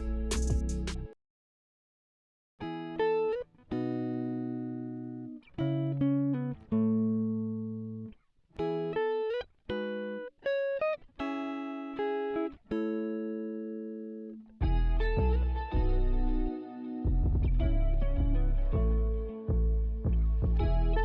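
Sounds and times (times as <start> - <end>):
deep bass music: 0.0 - 1.1, 14.6 - 21.0
plucked guitar-like music: 0.0 - 1.2, 2.6 - 21.0.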